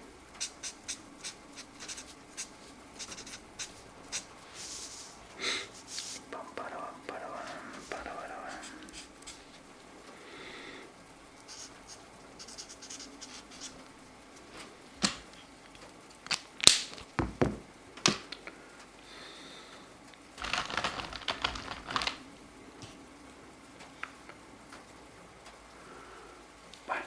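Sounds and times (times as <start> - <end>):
marker scratching on paper: 0.4 - 6.3, 7.5 - 9.6, 11.5 - 13.8.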